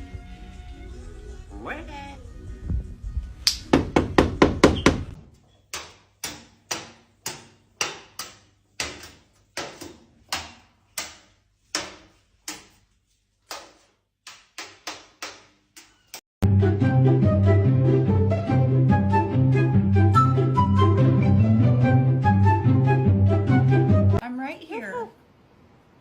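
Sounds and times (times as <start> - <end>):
knocking on a hard surface: 3.7 - 5.2.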